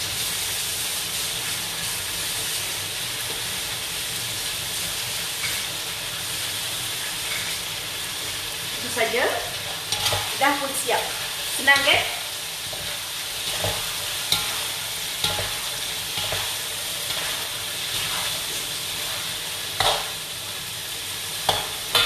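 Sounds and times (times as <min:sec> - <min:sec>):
sambal sizzling in a frying pan: 0:00.0 - 0:22.0
utensil scraping a pan: 0:09.6 - 0:20.2.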